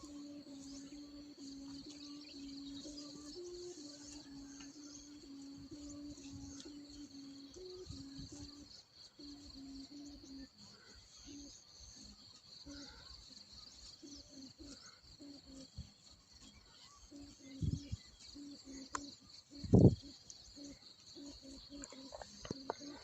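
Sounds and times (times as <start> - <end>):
kite hummer droning: 0.0 - 10.5.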